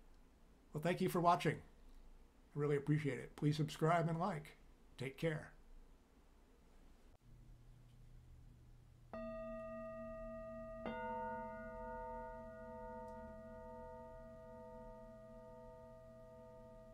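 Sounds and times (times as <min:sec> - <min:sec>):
bell-like chime tones: 0:09.1 - 0:16.9.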